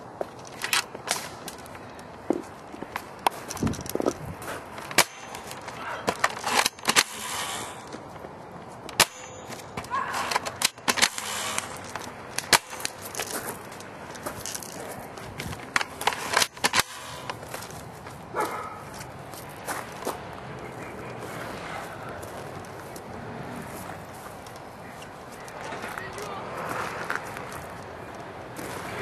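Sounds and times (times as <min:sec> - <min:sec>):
footsteps: 0:00.0 - 0:29.0
airsoft gun shots: 0:10.2 - 0:11.8.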